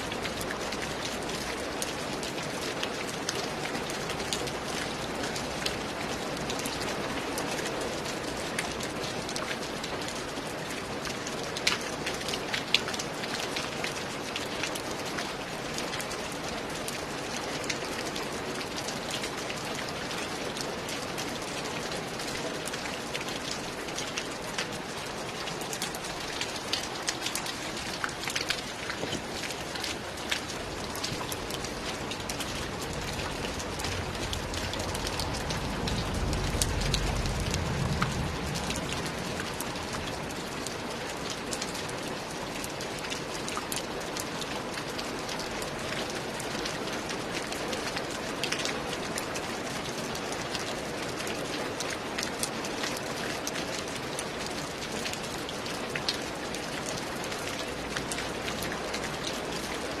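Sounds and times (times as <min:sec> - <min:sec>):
rain pattering on roof tiles: 0:00.0 - 1:00.0
low rumble: 0:33.6 - 0:39.3.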